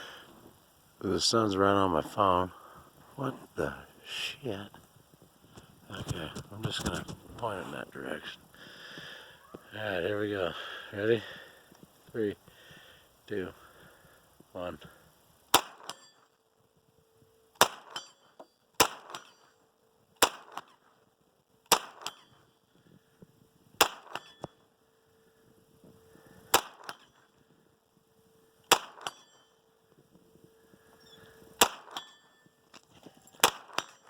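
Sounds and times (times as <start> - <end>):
faint steady tone: 0.0 - 34.0
gunshots: 15.5 - 16.0, 17.6 - 18.0, 18.8 - 19.4, 20.2 - 20.7, 21.7 - 22.3, 23.8 - 24.3, 26.5 - 27.1, 28.7 - 29.2, 31.6 - 32.0, 33.4 - 34.0.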